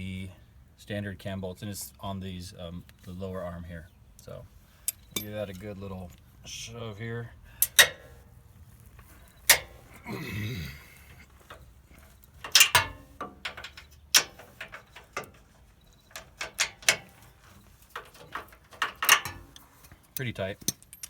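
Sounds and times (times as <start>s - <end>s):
socket wrench clicking: 7.6s - 8.2s, 9.5s - 9.9s, 12.4s - 15.4s, 16.1s - 17.4s, 18.0s - 19.7s, 20.6s - 21.0s.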